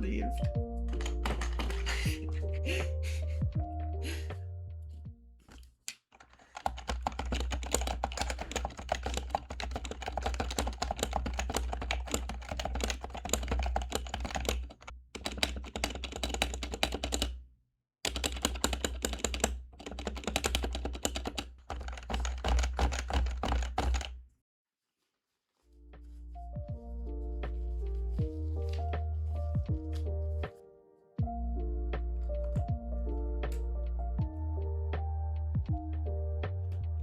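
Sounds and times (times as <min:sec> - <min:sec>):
fast keyboard typing: 0:00.9 - 0:02.3, 0:06.2 - 0:17.4, 0:18.1 - 0:24.2.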